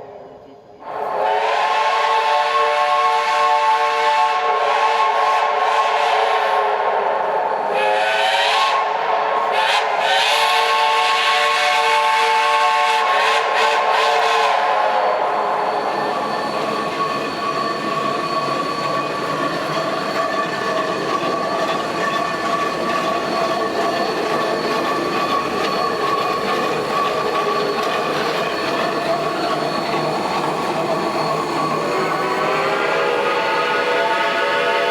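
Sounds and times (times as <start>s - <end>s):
steam locomotive rolling by: 0.0s - 34.9s
steam whistle chord: 0.8s - 7.0s, 30.8s - 34.9s
high wheel squeal: 14.6s - 34.9s.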